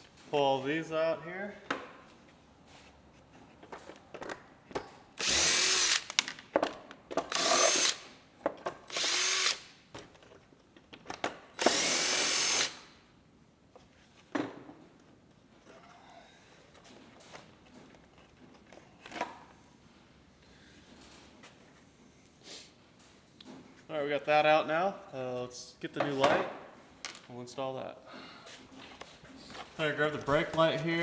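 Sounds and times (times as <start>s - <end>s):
cordless drill spinning out fasteners: 5.2s - 6.4s, 7.2s - 8.2s, 8.8s - 9.8s, 11.6s - 12.9s.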